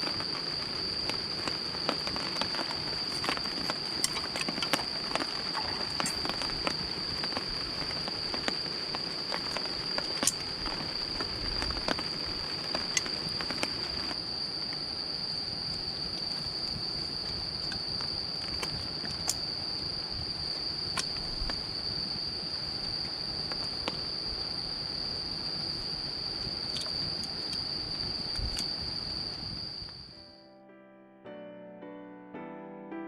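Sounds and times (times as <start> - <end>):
raindrops ticking: 0.0 - 14.2
high-pitched insect trill: 0.0 - 30.5.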